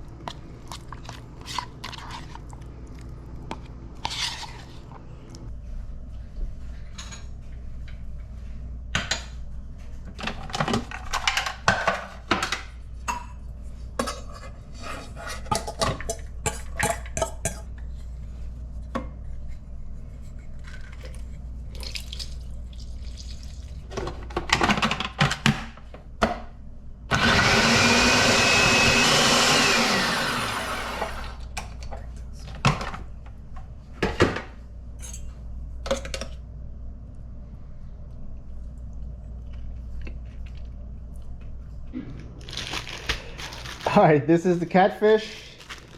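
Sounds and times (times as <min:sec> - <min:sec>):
kitchen knocks and clatters: 0:10.1 - 0:13.4, 0:15.2 - 0:17.7, 0:23.9 - 0:26.5, 0:33.9 - 0:36.4
kitchen blender running: 0:27.1 - 0:31.5.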